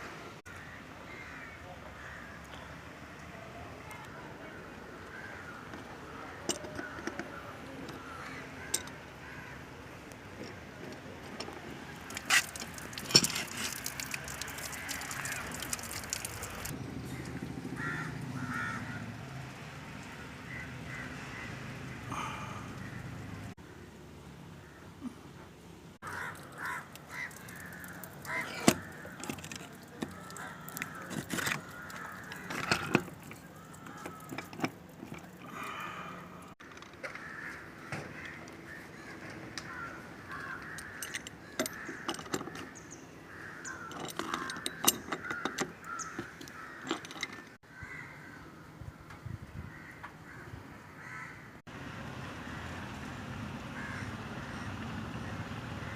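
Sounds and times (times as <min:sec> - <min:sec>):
crows cawing: 0:00.5 - 0:02.7, 0:04.6 - 0:09.8, 0:12.1 - 0:19.2, 0:20.1 - 0:23.8, 0:24.6 - 0:25.1, 0:26.0 - 0:48.6, 0:49.7 - 0:51.6, 0:53.8 - 0:54.8.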